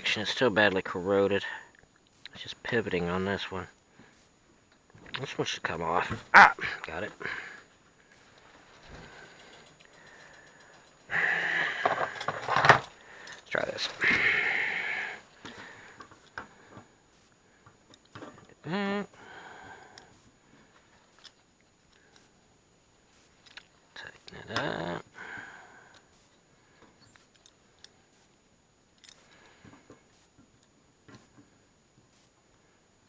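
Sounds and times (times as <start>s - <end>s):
faint clicks and knocks of tools: 6.8s - 14.4s, 15.1s - 18.6s, 19.2s - 32.7s.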